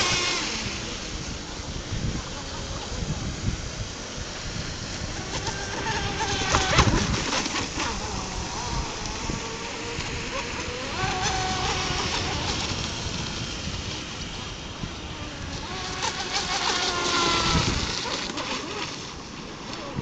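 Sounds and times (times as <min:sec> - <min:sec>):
rc speedboat motor whining: 0:00.0 - 0:20.0
hull splashing on water: 0:04.2 - 0:20.0.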